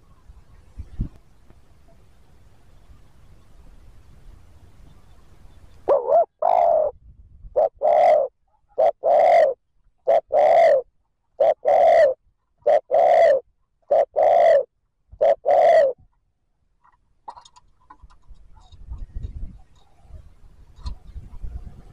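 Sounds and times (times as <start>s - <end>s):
dove cooing: 5.8s - 7.0s, 7.6s - 16.0s.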